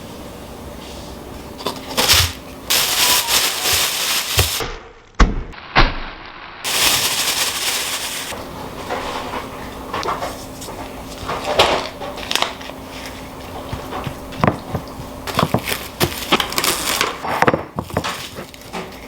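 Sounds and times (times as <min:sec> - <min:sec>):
crackly rustling: 0:01.8 - 0:04.6, 0:06.7 - 0:17.2.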